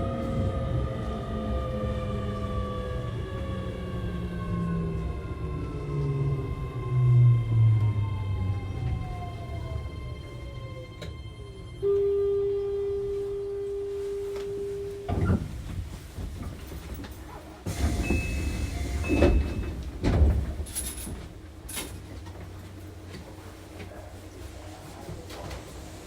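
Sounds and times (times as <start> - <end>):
train rumbling: 0.0 - 26.0
sliding doors clunking: 17.7 - 22.3.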